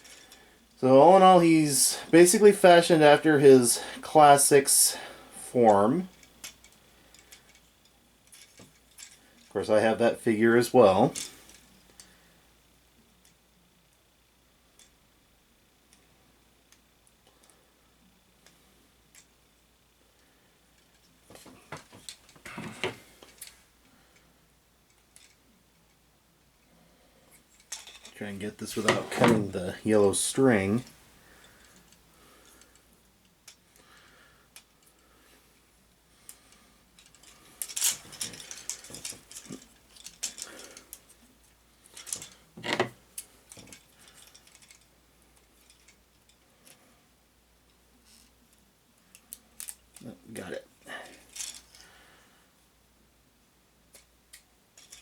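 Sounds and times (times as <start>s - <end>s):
plastic toy clicks and rattles: 24.9s - 25.4s, 27.5s - 28.2s, 37.0s - 41.1s, 41.9s - 46.8s, 49.1s - 50.0s, 51.3s - 51.8s, 53.9s - 55.0s.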